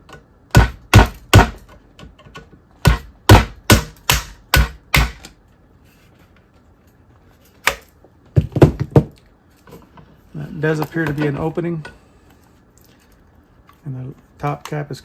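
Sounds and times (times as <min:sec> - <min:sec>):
hammer striking a chisel: 0:00.5 - 0:01.6, 0:02.8 - 0:05.3.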